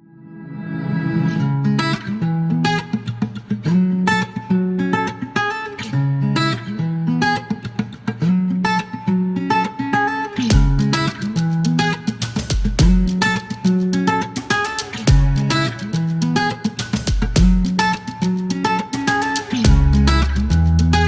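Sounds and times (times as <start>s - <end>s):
acoustic guitar music: 1.1s - 21.0s.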